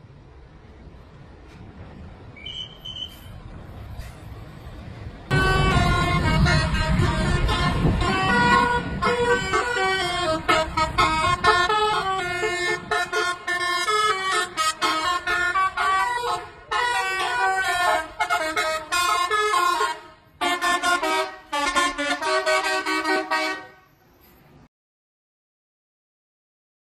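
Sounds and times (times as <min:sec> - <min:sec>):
low vehicle rumble: 0:00.0 - 0:24.7
multi-tone air horn tune: 0:05.3 - 0:24.0.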